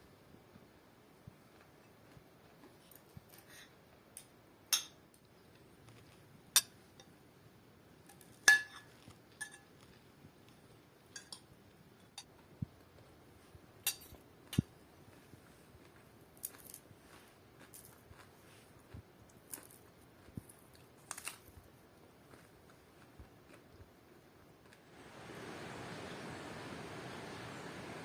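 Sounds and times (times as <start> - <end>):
dishes and cutlery clinking: 8.1 - 9.8, 13.9 - 14.2.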